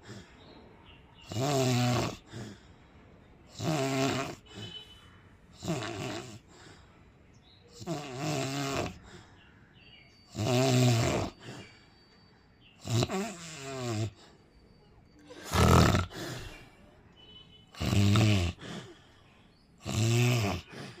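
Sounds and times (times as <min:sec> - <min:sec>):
person snoring loudly: 0:01.3 - 0:02.4, 0:03.5 - 0:04.7, 0:05.6 - 0:06.4, 0:07.8 - 0:09.0, 0:10.3 - 0:11.4, 0:12.8 - 0:14.2, 0:15.3 - 0:16.6, 0:17.8 - 0:18.9, 0:19.8 - 0:21.0.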